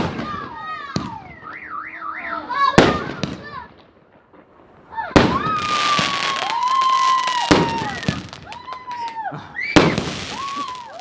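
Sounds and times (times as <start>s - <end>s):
firework bangs: 5.0s - 11.0s
firework crackling: 5.2s - 11.0s.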